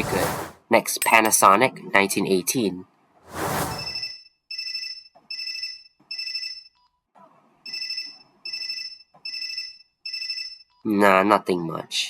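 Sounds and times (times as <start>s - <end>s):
phone ringtone beeps: 3.9s - 6.8s, 7.7s - 10.7s.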